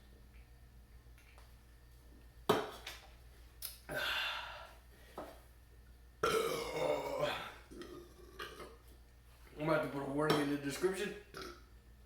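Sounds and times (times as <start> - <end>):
man belching: 6.2 - 8.8, 11.3 - 11.6.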